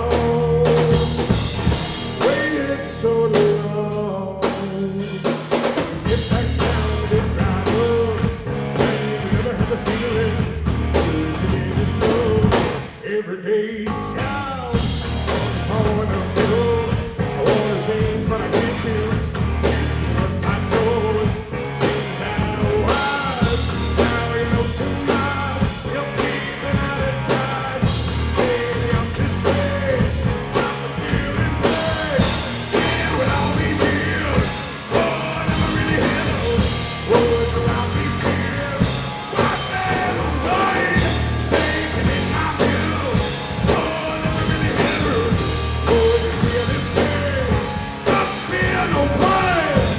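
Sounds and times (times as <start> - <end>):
rock music with singing: 0.0 - 49.9
drum beat: 21.9 - 49.9.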